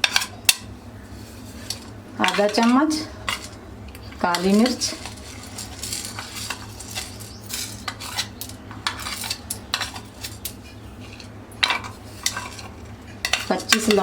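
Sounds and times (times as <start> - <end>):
metal spoon clinking against pan: 1.7 - 3.6, 11.6 - 14.0.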